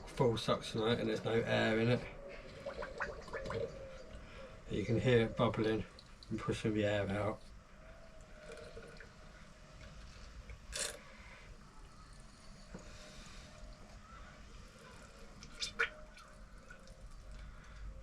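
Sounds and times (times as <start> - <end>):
oil bubbling and squelching: 2.4 - 4.3, 15.2 - 18.0.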